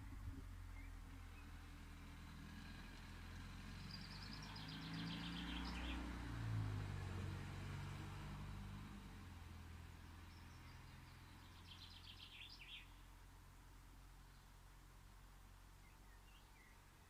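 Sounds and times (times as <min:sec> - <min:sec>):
passing vehicle rumble: 0:00.0 - 0:14.1.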